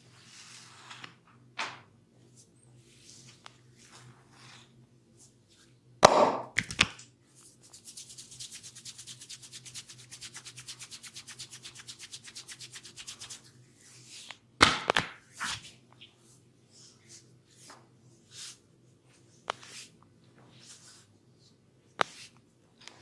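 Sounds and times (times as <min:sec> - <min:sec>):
hands rubbing skin: 0:07.4 - 0:14.4, 0:16.7 - 0:21.1.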